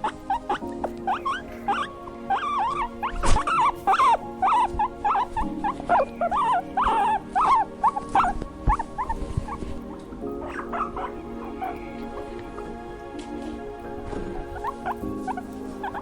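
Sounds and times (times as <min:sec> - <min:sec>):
animal making high calls: 0:00.0 - 0:12.7, 0:14.4 - 0:16.0
background music: 0:00.0 - 0:16.0.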